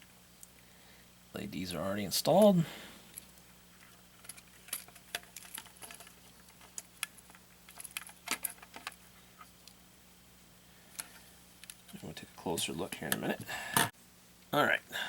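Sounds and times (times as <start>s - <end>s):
small plastic parts clicking: 4.2s - 9.0s.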